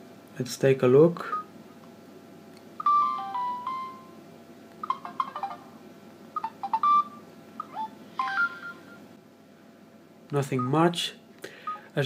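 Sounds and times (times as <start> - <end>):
descending phone chime: 2.8 - 4.2, 6.4 - 8.9.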